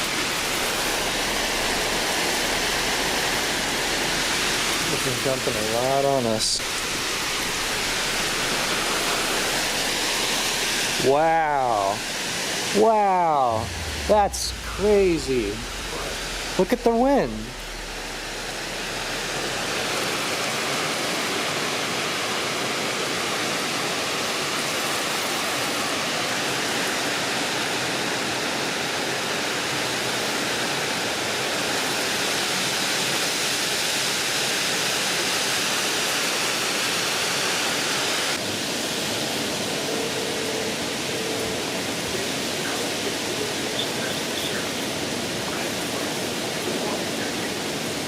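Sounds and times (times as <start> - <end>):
heavy rain pouring: 0.0 - 48.0
strong wind: 6.6 - 21.4.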